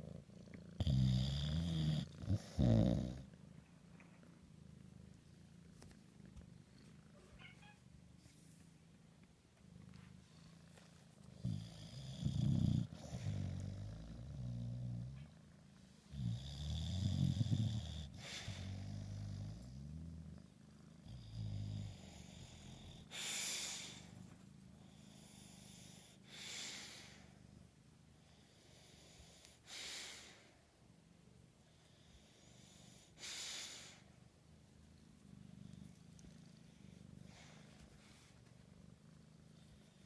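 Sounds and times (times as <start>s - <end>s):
dog snoring: 0.0s - 3.3s, 11.3s - 15.3s, 16.1s - 24.1s.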